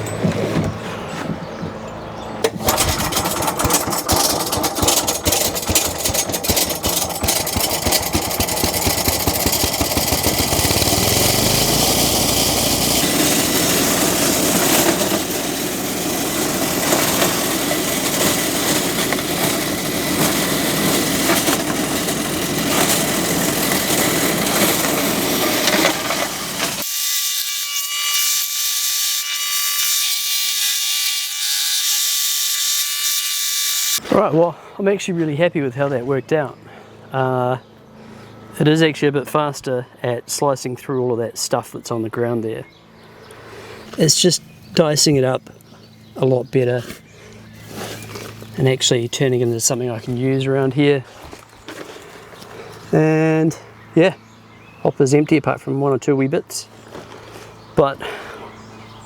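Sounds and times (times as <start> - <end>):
wood chipper shredding debris: 2.4 - 27.6
rapid clattering impacts: 2.5 - 26.8.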